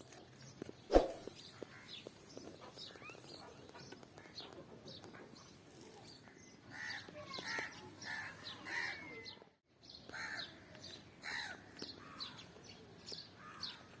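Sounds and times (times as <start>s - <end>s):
small birds chirping: 0.0s - 14.0s
crows cawing: 10.1s - 10.5s, 11.2s - 12.4s.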